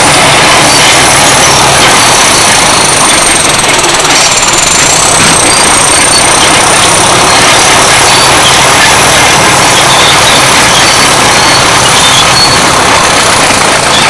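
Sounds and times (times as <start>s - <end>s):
diesel engine running under load: 0.0s - 14.0s
turbocharger whistle: 0.0s - 14.0s.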